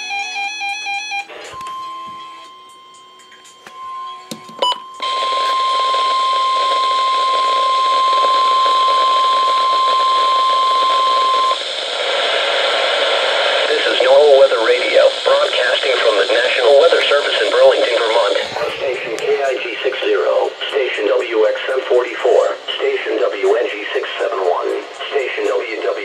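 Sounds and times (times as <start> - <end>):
weather radio alarm tone: 0.0 - 11.6, 13.8 - 22.9
radio static hiss: 10.0 - 26.0.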